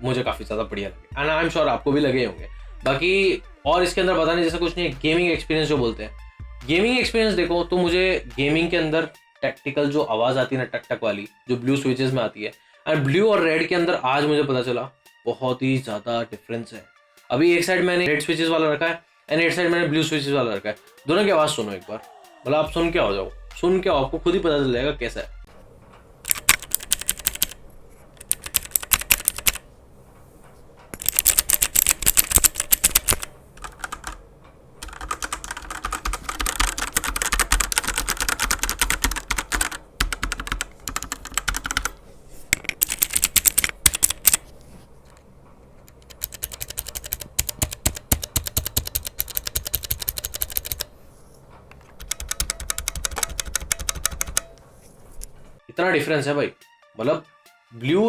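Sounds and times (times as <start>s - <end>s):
fast typing on mechanical keyboard: 26.3s - 27.6s, 28.2s - 29.6s, 31.0s - 34.2s, 34.8s - 42.0s, 42.7s - 44.4s, 45.9s - 50.9s, 52.0s - 54.5s.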